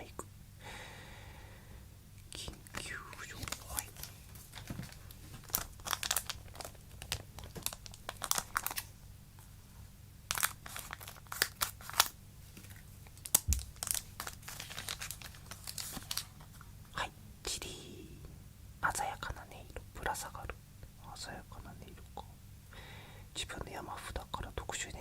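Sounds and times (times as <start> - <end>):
foil wrapper crinkling and tearing: 3.4 - 8.9, 10.3 - 16.4.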